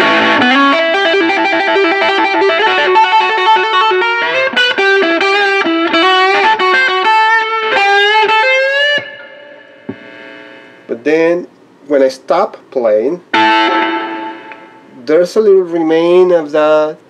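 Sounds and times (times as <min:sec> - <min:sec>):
distorted electric guitar lead: 0:00.0 - 0:11.0, 0:13.3 - 0:15.0.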